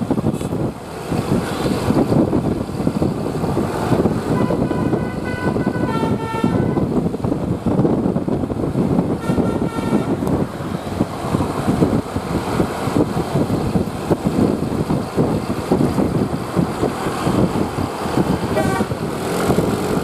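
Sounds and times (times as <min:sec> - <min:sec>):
heavy vehicle rumble: 0:00.0 - 0:20.0
melodic bus horn: 0:04.3 - 0:06.9, 0:09.1 - 0:10.3, 0:18.5 - 0:19.0.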